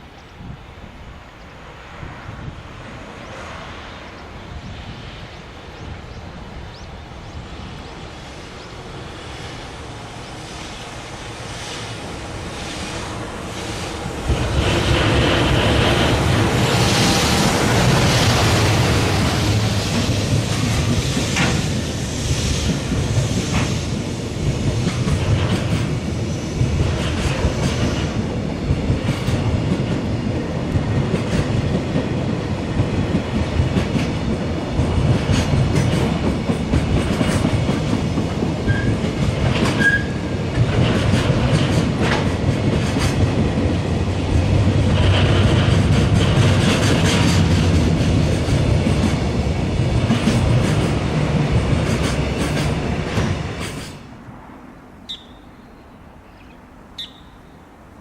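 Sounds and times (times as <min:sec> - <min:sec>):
train rumble: 0:00.0 - 0:58.0
train wheels clacking: 0:11.2 - 0:54.2.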